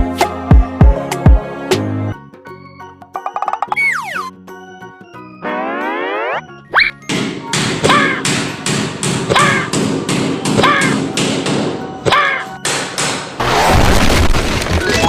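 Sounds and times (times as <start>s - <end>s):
cartoon rising whistle: 3.7s - 4.3s
short falling squeak: 6.7s - 7.1s.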